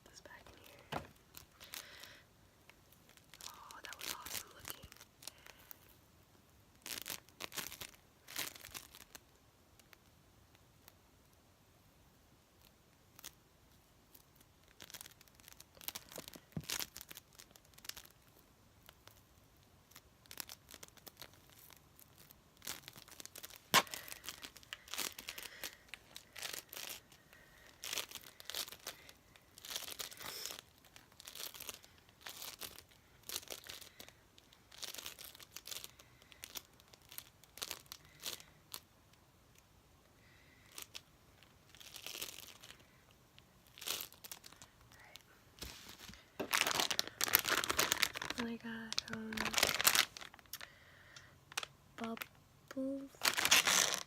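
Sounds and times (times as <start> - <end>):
crinkly material crackling: 0.0 - 11.4, 12.3 - 54.0.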